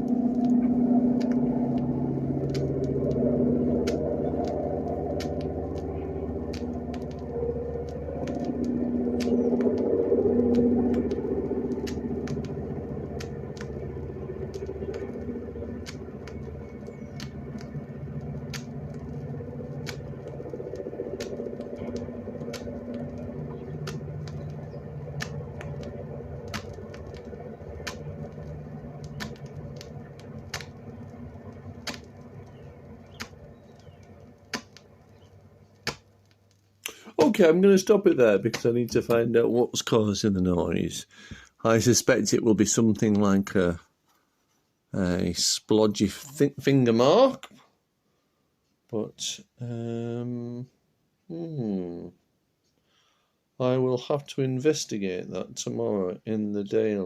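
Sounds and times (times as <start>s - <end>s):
record clicking: 0.0s - 39.4s
airliner engines droning: 0.0s - 43.8s.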